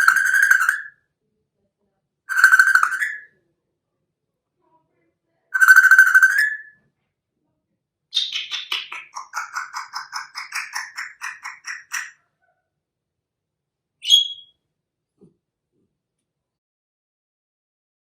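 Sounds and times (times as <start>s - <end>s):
parrot warbling: 0.0s - 0.9s, 2.3s - 3.3s, 5.6s - 6.7s
parrot short whistle: 5.6s - 6.7s.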